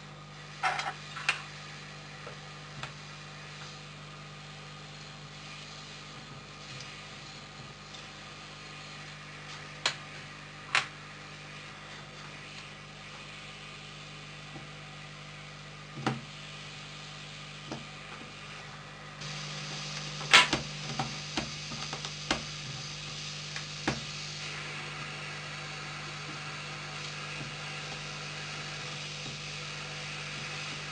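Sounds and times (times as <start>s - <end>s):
steady low hum: 0.0s - 30.9s.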